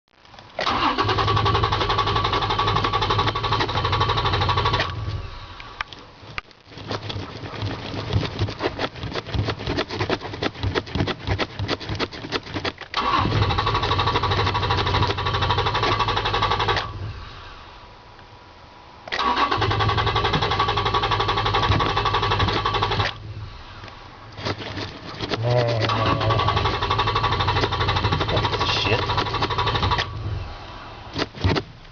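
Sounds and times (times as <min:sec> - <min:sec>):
starter motor cranking: 0:00.6 - 0:05.2, 0:06.8 - 0:17.0, 0:19.1 - 0:23.3, 0:24.4 - 0:30.4
truck engine running: 0:13.0 - 0:17.5, 0:19.2 - 0:23.9, 0:25.3 - 0:30.6.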